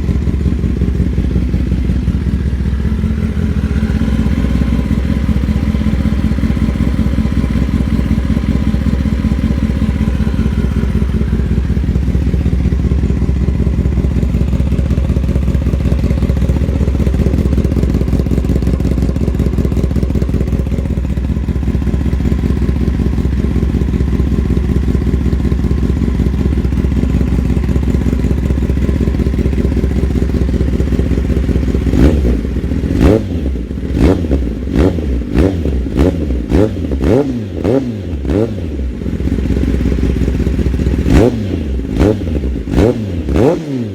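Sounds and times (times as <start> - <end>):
motorcycle engine idling: 0.0 - 43.9
motorcycle throttle revs: 30.0 - 43.9.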